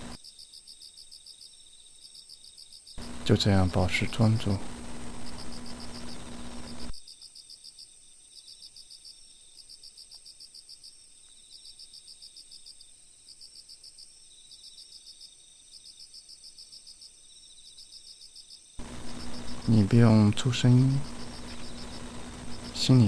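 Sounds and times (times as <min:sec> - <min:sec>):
crickets chirping: 0:00.0 - 0:23.0
hiss and low hum: 0:03.0 - 0:07.0, 0:18.8 - 0:23.0.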